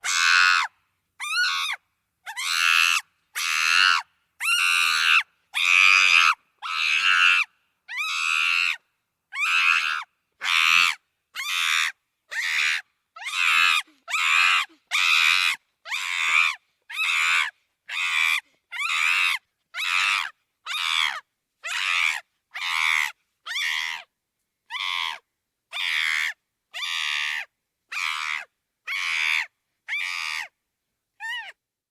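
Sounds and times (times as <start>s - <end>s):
chimpanzee screaming: 0.0s - 5.8s.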